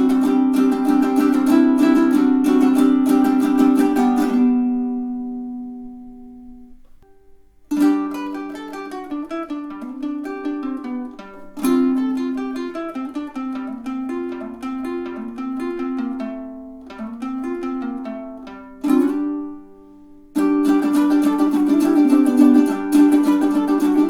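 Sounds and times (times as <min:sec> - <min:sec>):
ukulele strumming: 0:00.0 - 0:24.0.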